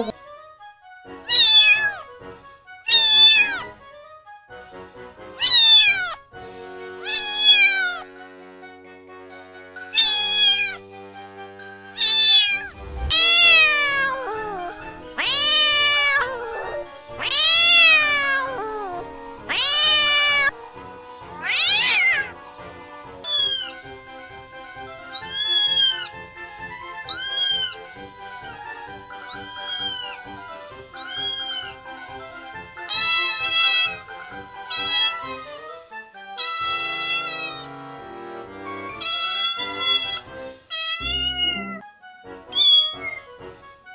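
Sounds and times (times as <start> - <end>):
cats meowing: 1.3 - 2.0, 2.9 - 3.7, 5.4 - 6.2, 7.0 - 8.0, 9.9 - 10.8, 12.0 - 20.6, 21.4 - 22.4, 23.2 - 23.8, 25.1 - 26.1, 27.0 - 27.8, 29.2 - 30.3, 30.9 - 31.8, 32.8 - 34.1, 34.7 - 35.7, 36.4 - 37.7, 38.8 - 41.8, 42.5 - 43.4.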